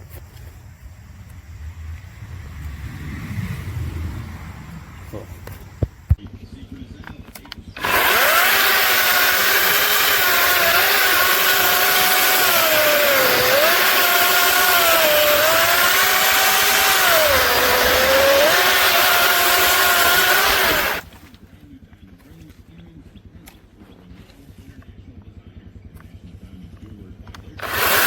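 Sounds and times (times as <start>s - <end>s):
electric chainsaw cutting wood: 7.8s - 21.3s, 27.6s - 28.0s.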